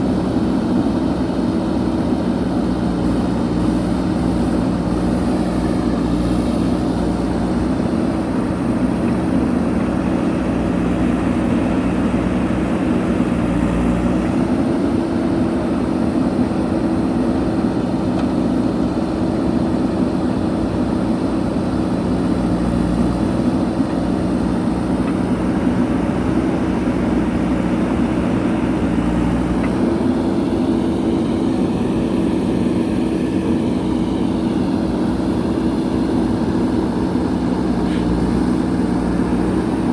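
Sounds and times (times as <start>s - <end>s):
backhoe diesel engine running: 0.0s - 39.9s.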